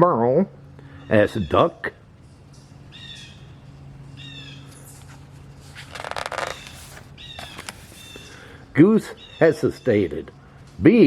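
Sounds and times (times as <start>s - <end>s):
birds calling: 6.0s - 10.1s.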